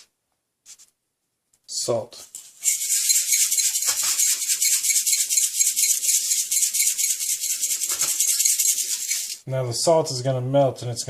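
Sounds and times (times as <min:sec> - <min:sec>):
salt grains rattling: 0:02.5 - 0:09.4.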